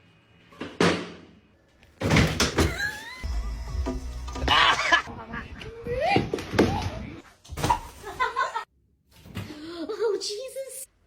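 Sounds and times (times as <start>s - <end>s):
music: 3.2s - 5.1s.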